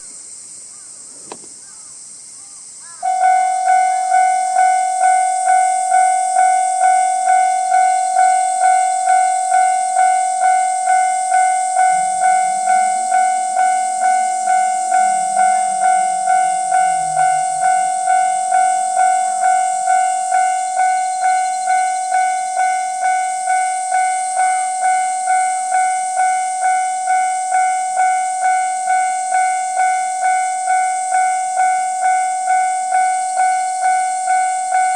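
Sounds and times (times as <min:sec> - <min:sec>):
high steady hiss: 0:00.0 - 0:34.9
level-crossing bell dinging: 0:03.0 - 0:34.9.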